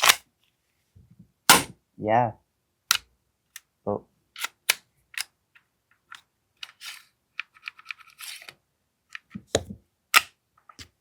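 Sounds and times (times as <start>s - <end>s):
pistol crack: 1.5s - 1.8s.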